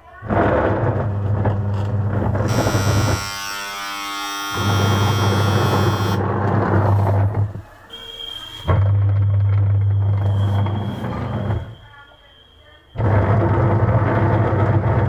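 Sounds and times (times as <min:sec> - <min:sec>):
washing machine motor humming: 0:00.2 - 0:07.6.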